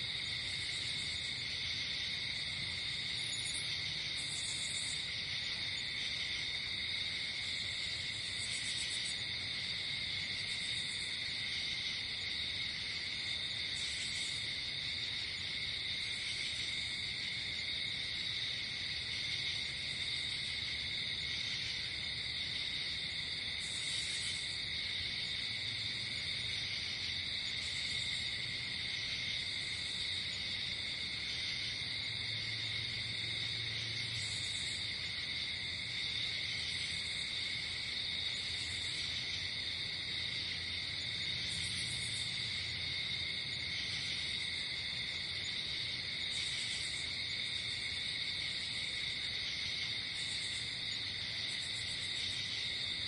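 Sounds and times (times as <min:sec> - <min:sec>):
crickets trilling: 0:00.0 - 0:53.0
high-pitched insect chirp: 0:03.1 - 0:05.0.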